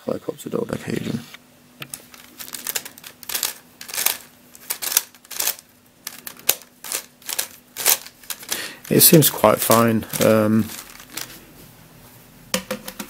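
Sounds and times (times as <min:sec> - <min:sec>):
plastic puzzle clicking and scraping: 0:01.8 - 0:11.4.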